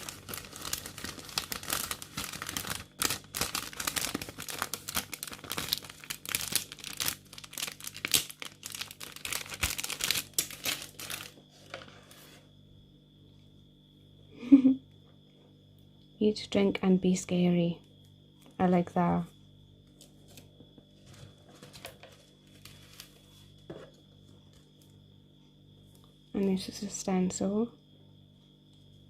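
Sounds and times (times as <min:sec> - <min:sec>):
packaging crinkling and tearing: 0:00.0 - 0:11.4, 0:21.5 - 0:23.2.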